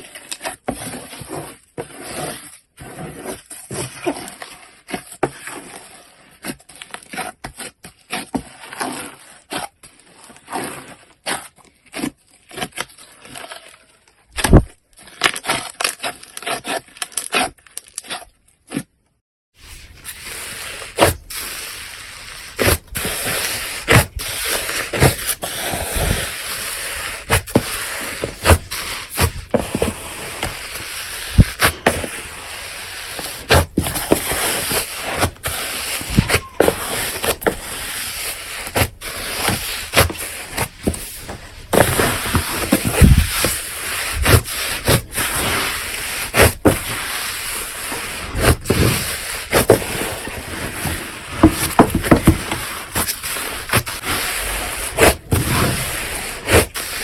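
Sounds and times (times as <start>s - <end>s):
slime squishing: 19.8s - 57.0s.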